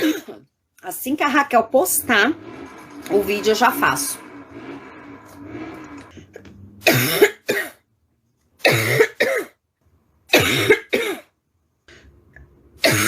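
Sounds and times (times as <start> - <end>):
woman's barking cough: 8.6 - 9.6, 10.3 - 11.3.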